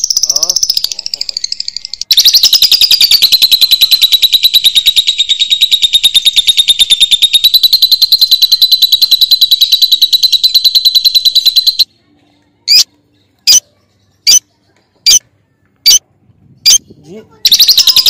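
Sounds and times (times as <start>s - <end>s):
lovebird chattering trill: 0.0s - 11.9s, 12.7s - 12.9s, 14.2s - 14.5s, 16.6s - 18.0s.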